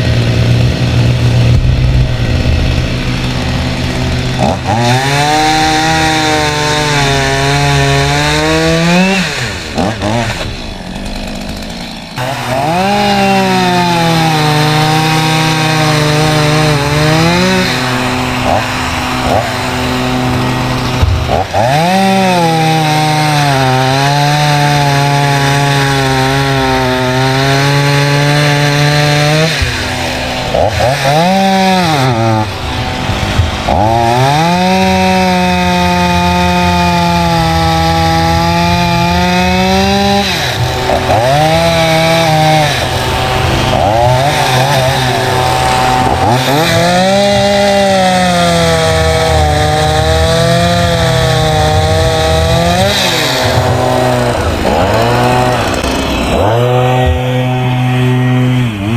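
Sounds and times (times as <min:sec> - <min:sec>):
chainsaw revving and idling: 0:00.0 - 0:58.9.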